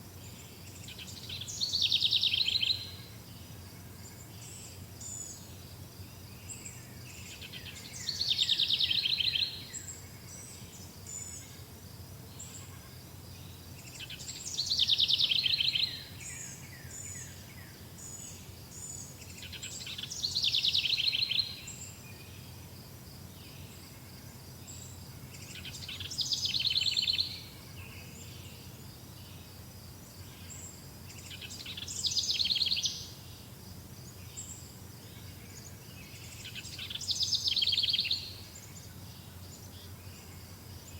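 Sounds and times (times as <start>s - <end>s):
songbird singing loudly: 0.9s - 3.0s, 6.5s - 10.5s, 13.9s - 17.5s, 18.1s - 22.0s, 25.4s - 28.4s, 30.5s - 33.2s, 35.6s - 38.8s.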